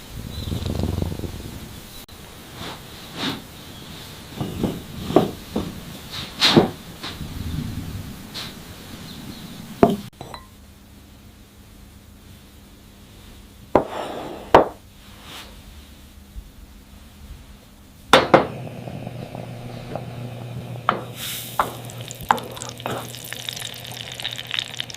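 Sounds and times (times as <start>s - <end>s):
cookware knocking and clinking: 9.8s - 10.5s.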